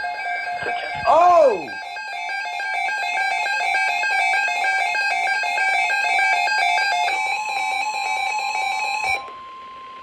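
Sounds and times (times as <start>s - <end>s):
steady alarm tone: 0.0s - 9.7s
alarm beeping in two pitches: 0.6s - 1.9s.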